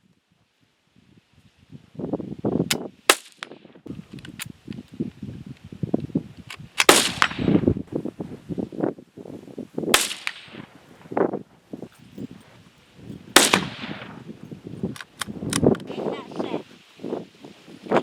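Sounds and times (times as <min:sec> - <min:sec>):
rifle shots with echo: 0:06.8 - 0:07.6, 0:09.9 - 0:10.7, 0:13.4 - 0:14.2.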